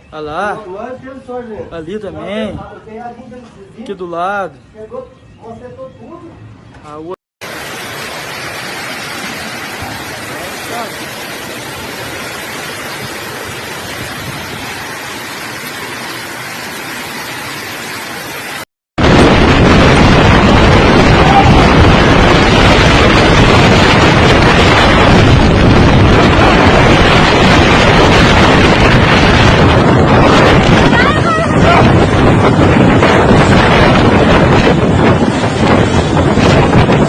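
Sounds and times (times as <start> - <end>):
wind buffeting microphone: 0.0 - 3.3, 8.2 - 15.0, 19.0 - 37.0.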